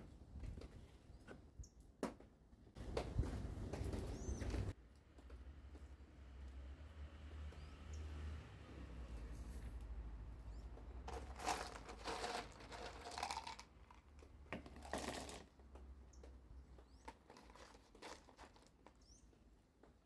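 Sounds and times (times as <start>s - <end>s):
hands working potting soil: 10.6s - 20.0s.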